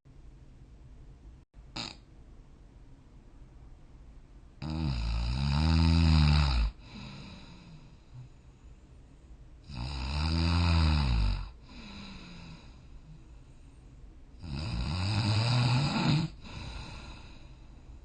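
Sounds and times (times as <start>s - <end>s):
person snoring: 1.8s - 2.0s, 4.6s - 8.3s, 9.6s - 13.2s, 14.4s - 17.6s
soft breathing: 6.8s - 9.6s, 11.6s - 14.4s, 16.3s - 18.0s.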